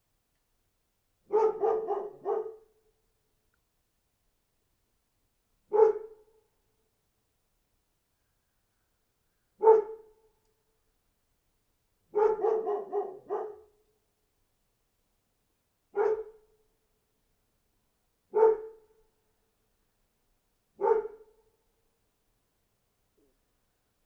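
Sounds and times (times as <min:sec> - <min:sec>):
dog barking: 0:01.3 - 0:02.7, 0:05.7 - 0:06.2, 0:09.6 - 0:10.1, 0:12.1 - 0:13.7, 0:16.0 - 0:16.4, 0:18.3 - 0:18.8, 0:20.8 - 0:21.3.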